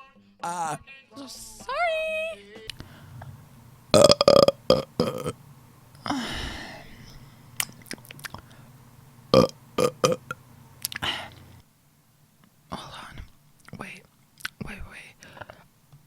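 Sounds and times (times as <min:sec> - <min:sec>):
woman burping: 0:02.8 - 0:05.4, 0:06.0 - 0:07.2, 0:09.3 - 0:11.5.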